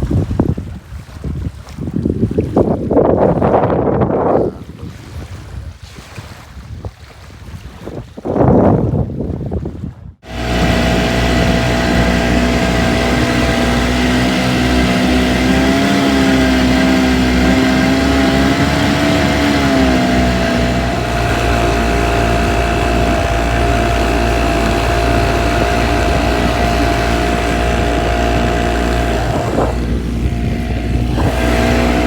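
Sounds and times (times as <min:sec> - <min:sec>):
wind buffeting microphone: 0:00.0 - 0:32.0
boat motor running: 0:10.2 - 0:32.0.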